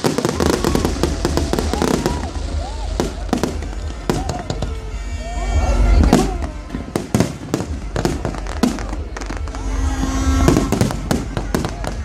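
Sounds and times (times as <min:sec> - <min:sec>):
deep fireworks booms: 0:00.0 - 0:05.1, 0:05.9 - 0:12.0
fireworks bangs and crackles: 0:00.0 - 0:12.0.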